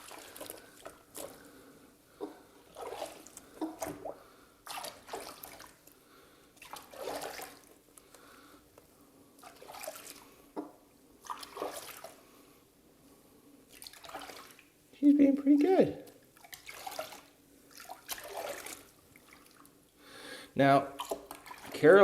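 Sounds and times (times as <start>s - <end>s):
bath water splashing and dripping: 0.0s - 6.0s, 6.6s - 7.9s, 9.4s - 12.3s, 13.7s - 14.8s, 15.4s - 20.0s, 20.9s - 22.0s.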